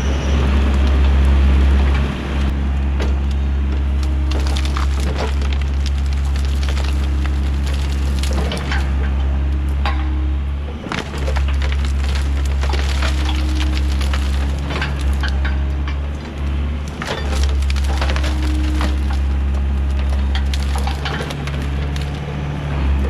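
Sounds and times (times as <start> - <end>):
diesel engine running: 0.0 - 23.0
brush cracking and snapping: 4.0 - 8.9, 10.9 - 15.5, 16.9 - 22.3.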